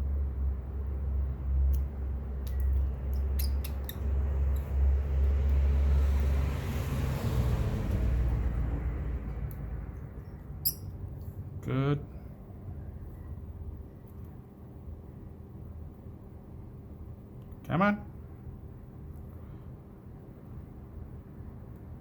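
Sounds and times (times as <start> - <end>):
low steady rumble: 0.0 - 22.0.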